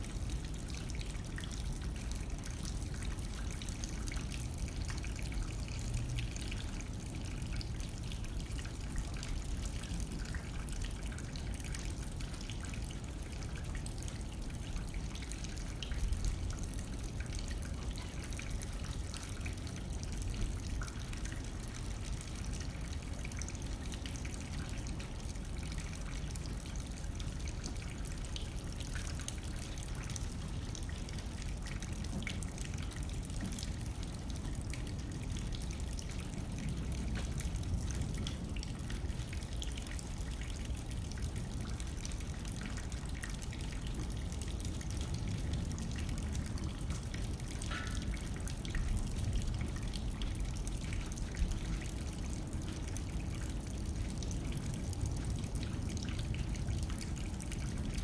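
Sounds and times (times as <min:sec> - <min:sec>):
rain drops ticking on glass: 0:00.0 - 0:58.0.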